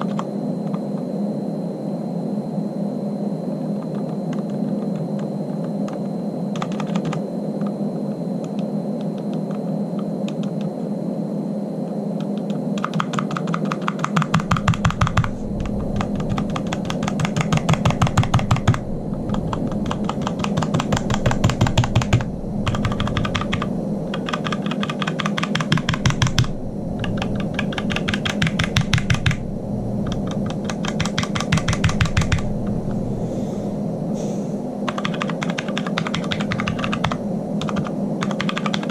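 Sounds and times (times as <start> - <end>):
steady low hum: 0.0 - 38.9
mechanical keyboard typing: 6.6 - 7.2, 12.2 - 29.4, 30.0 - 32.4, 34.9 - 38.9.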